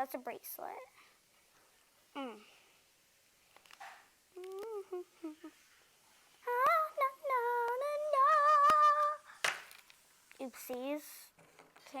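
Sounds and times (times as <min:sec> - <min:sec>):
girl humming a tune: 0:02.1 - 0:02.6, 0:04.4 - 0:05.6, 0:06.5 - 0:09.3.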